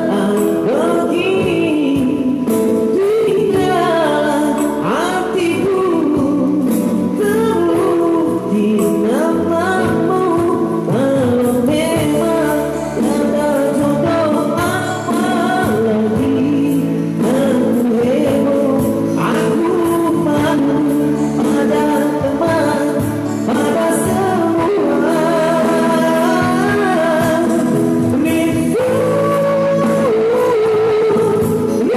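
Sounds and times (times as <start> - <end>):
instrumental accompaniment: 0.0 - 31.9
man singing: 0.0 - 31.9.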